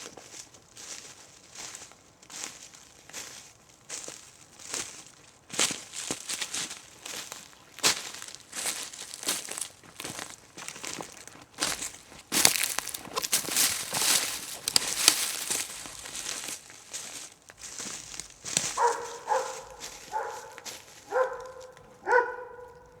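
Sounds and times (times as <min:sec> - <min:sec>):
footsteps crunching dry leaves: 0:00.0 - 0:23.0
animal calls: 0:18.8 - 0:23.0.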